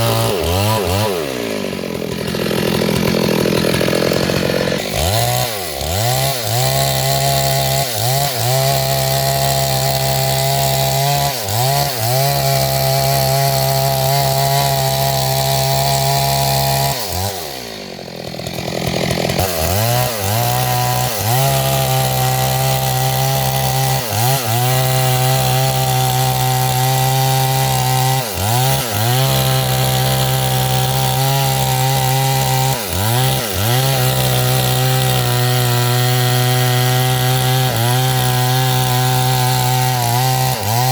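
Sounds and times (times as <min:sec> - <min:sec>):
chainsaw cutting a tree: 0:00.0 - 0:40.9.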